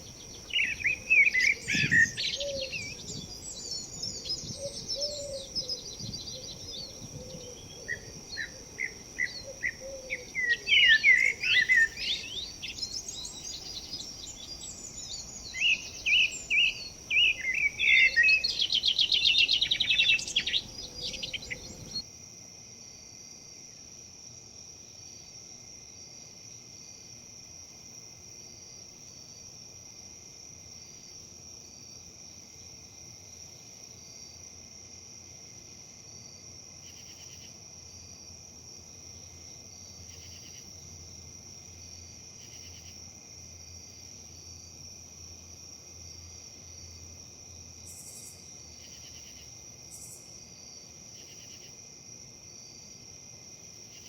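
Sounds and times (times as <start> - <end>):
songbirds chirping and trilling: 0.0 - 22.0
high insect drone: 0.0 - 54.0
low background hiss: 0.0 - 54.0.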